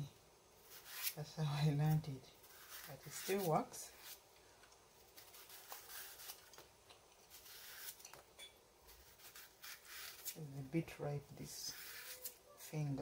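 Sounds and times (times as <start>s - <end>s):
knife scraping banana peel: 0.6s - 1.2s, 1.9s - 4.2s, 5.2s - 6.6s, 7.2s - 8.2s, 8.9s - 10.5s, 11.4s - 12.4s.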